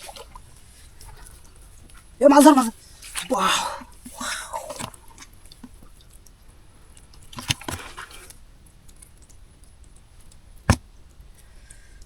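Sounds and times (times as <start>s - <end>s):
splashing in shallow muddy water: 0.0s - 11.0s.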